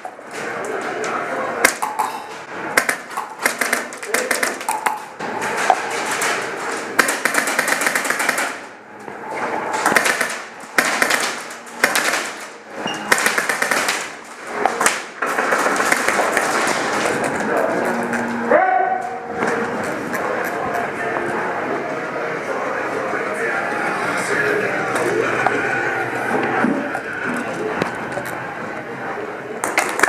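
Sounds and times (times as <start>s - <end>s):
airsoft guns firing: 2.7s - 5.0s, 7.0s - 8.7s, 9.8s - 16.8s
background voices: 19.2s - 29.5s.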